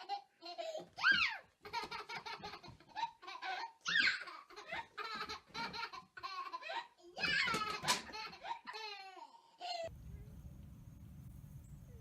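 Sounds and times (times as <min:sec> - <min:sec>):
child squealing: 0:03.8 - 0:04.3.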